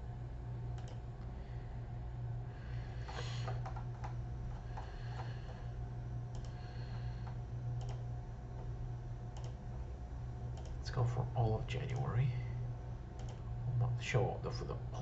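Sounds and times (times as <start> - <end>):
low electrical hum: 0.0 - 15.0
keyboard typing: 3.1 - 5.3, 7.2 - 8.0, 9.3 - 9.6
mouse clicks: 7.8 - 8.0, 9.3 - 9.6.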